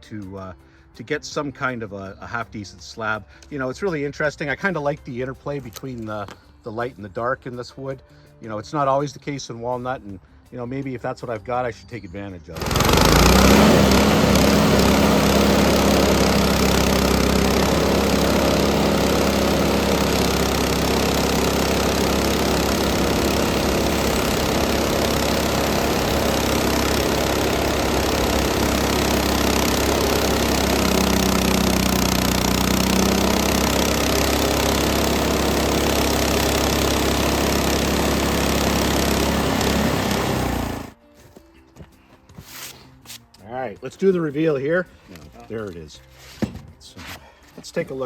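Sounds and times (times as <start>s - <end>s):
band blade cutting wood: 12.6s - 40.9s
bandsaw mill gasoline engine: 12.6s - 41.0s.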